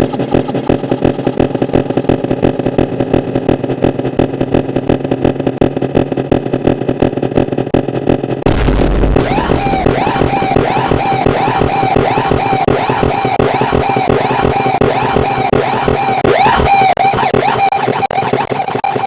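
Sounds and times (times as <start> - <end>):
looped bus horn stutter: 0.0 - 19.0.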